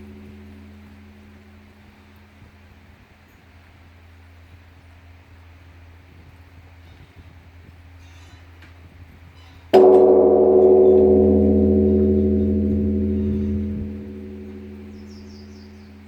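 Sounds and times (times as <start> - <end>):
temple bell ringing: 0.0 - 2.4, 9.8 - 16.0.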